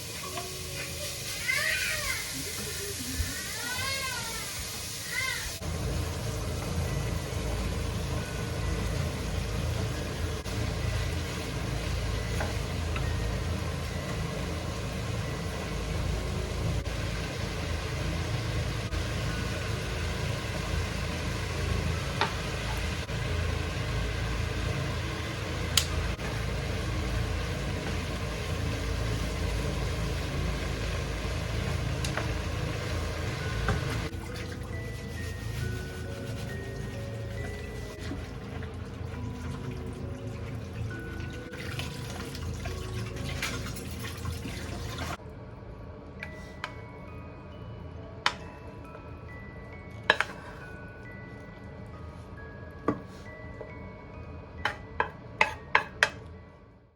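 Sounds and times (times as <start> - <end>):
low machine hum: 5.6 - 43.8.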